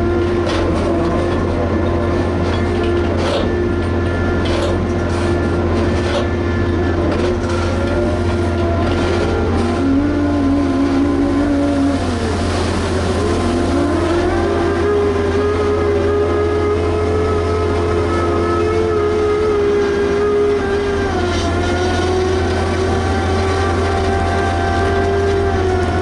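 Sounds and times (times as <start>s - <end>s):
heavy machinery engine drone: 0.0s - 26.0s
machinery whine: 0.0s - 26.0s.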